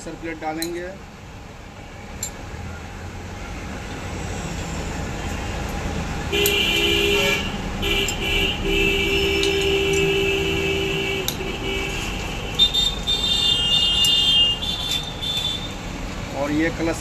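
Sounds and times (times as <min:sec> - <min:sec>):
vehicle horn: 0:06.3 - 0:15.8.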